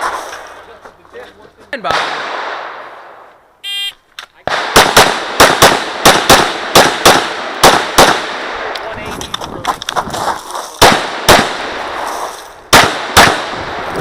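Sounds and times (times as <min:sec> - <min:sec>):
pistol shots with echo: 0:01.9 - 0:02.9, 0:04.4 - 0:08.8, 0:10.8 - 0:12.0, 0:12.7 - 0:13.9.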